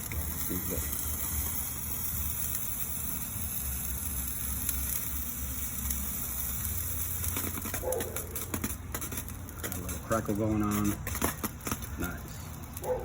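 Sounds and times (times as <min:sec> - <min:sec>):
sparkler hissing: 0:00.0 - 0:13.0.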